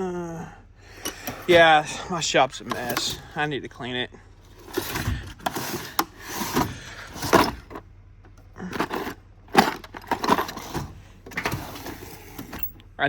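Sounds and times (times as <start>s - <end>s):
tools clattering and knocking: 2.5s - 3.4s, 4.5s - 12.9s.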